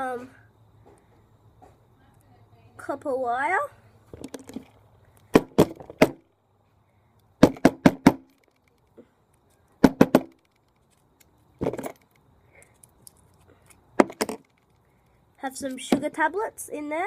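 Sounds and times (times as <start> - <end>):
small items clicking and knocking: 4.1 - 6.2, 7.2 - 16.0.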